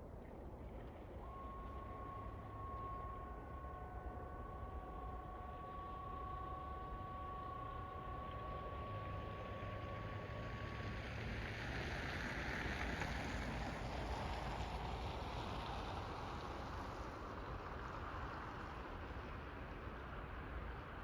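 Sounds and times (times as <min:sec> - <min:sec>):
electronic warning siren tone: 0:01.4 - 0:08.2.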